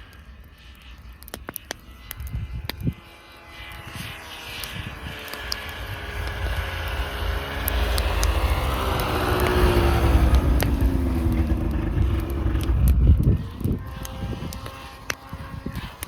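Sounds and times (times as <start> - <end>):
vehicle driving past: 3.3 - 15.2.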